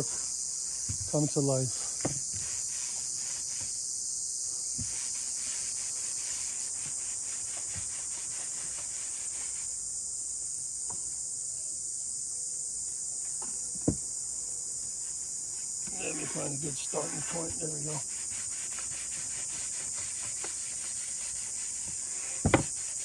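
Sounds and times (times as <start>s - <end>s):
crickets chirping: 0.0s - 23.0s
sharp knock: 22.4s - 22.7s.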